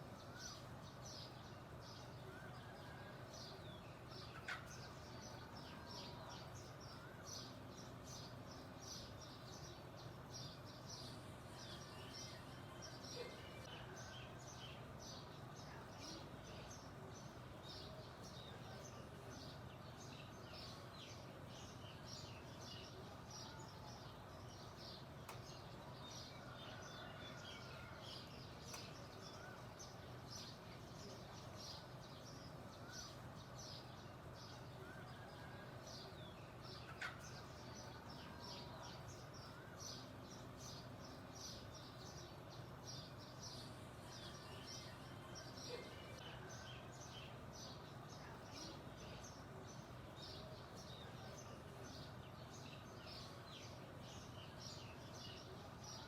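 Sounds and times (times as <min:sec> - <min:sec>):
songbirds chirping: 0:00.0 - 0:56.0.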